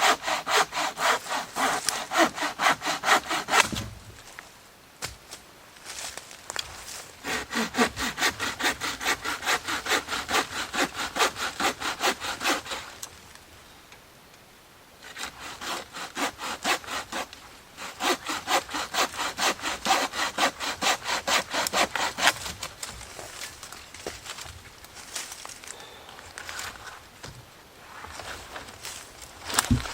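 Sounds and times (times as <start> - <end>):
hand saw cutting wood: 0.0 - 3.9, 7.2 - 12.9, 15.1 - 22.7.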